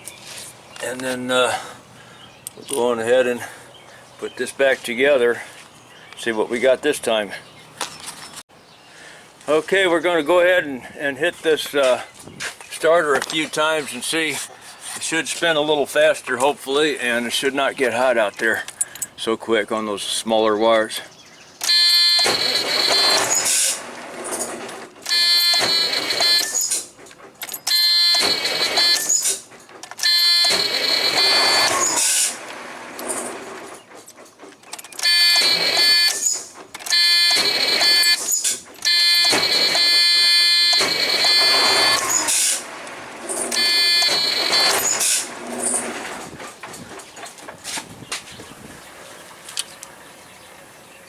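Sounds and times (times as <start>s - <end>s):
electric starter cranking engine: 21.6s - 46.2s
high buzzer tone: 21.7s - 23.5s, 25.1s - 26.6s, 27.7s - 29.2s, 30.0s - 32.1s, 35.0s - 36.2s, 36.9s - 38.3s, 38.9s - 42.3s, 43.6s - 45.1s.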